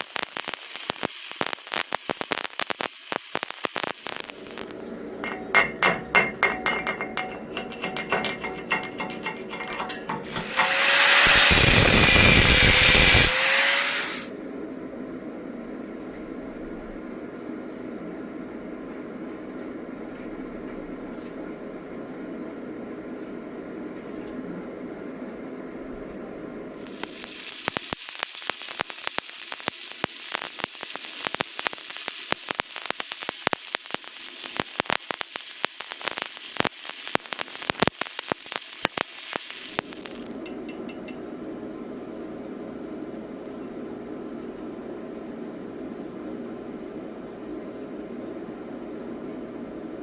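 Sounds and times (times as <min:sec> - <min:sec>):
welding arc crackling: 0:00.0 - 0:14.3, 0:26.8 - 0:41.2
steady hum: 0:00.0 - 0:23.9, 0:24.5 - 0:50.0.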